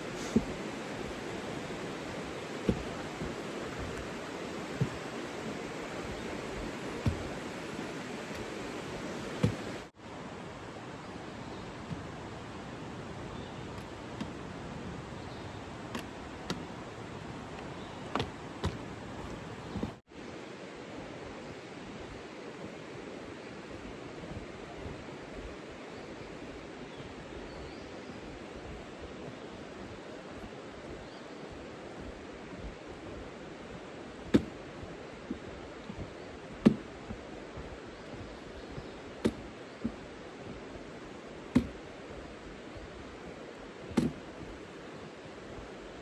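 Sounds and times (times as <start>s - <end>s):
footsteps on trail: 0.0s - 9.9s, 27.4s - 46.0s
river rushing: 0.0s - 13.2s
steady rushing outdoor noise: 0.0s - 46.0s.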